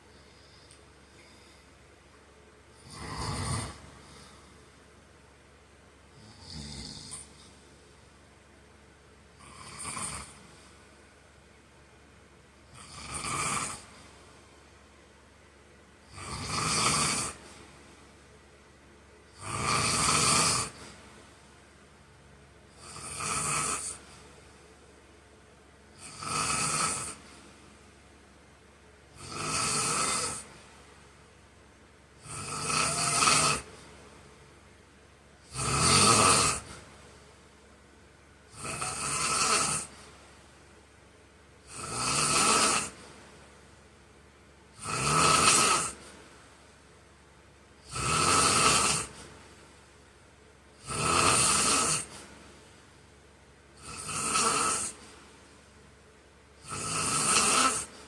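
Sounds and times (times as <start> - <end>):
quiet breaths: 0.0 - 58.0
man snoring: 2.7 - 4.6, 6.1 - 7.5, 9.4 - 10.6, 12.6 - 14.1, 16.0 - 17.6, 19.3 - 21.0, 22.7 - 24.2, 25.9 - 27.4, 29.1 - 30.6, 32.2 - 33.9, 35.4 - 36.8, 38.5 - 40.1, 41.6 - 43.1, 44.7 - 46.1, 47.8 - 49.3, 50.8 - 52.3, 53.8 - 55.1, 56.6 - 58.0.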